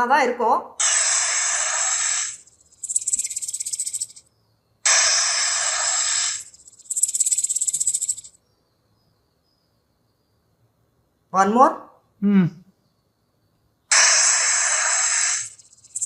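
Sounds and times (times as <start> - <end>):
fast rattling buzz: 0.8 - 4.2, 4.9 - 8.4, 14.0 - 16.0
snake hissing: 0.8 - 4.2, 4.9 - 8.3, 13.9 - 16.0.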